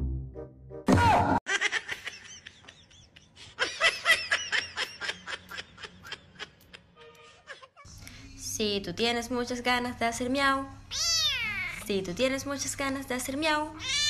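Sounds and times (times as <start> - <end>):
person laughing hard: 0.9 - 7.9.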